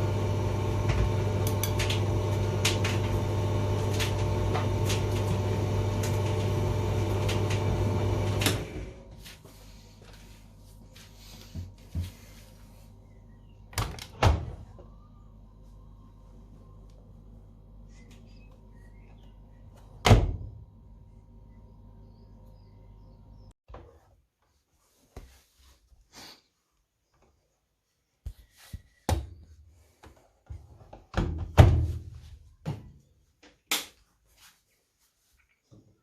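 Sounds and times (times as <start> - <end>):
tumble dryer humming: 0.0 - 21.6.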